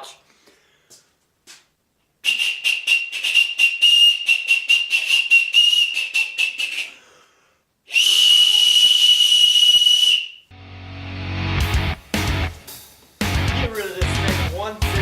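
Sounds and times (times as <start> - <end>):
shrill wooden whistle: 2.2 - 7.1, 7.9 - 10.5.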